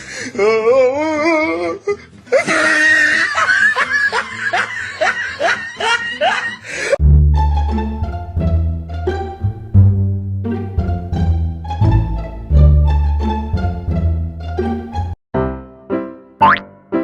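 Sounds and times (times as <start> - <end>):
person laughing hard: 2.3 - 7.0
music with plucked strings and bass: 7.0 - 15.2.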